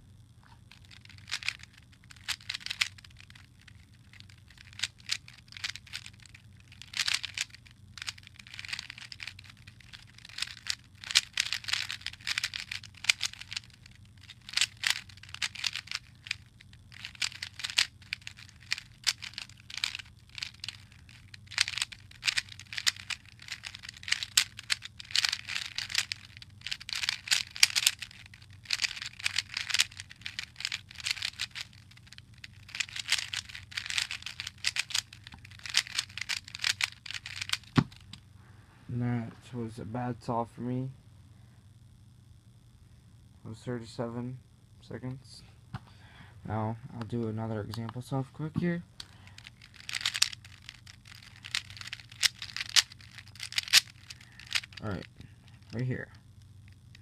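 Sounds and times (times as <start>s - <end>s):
faint steady hum: 0.0s - 57.0s
puzzle cube layers clicking: 0.7s - 38.0s, 49.4s - 54.9s.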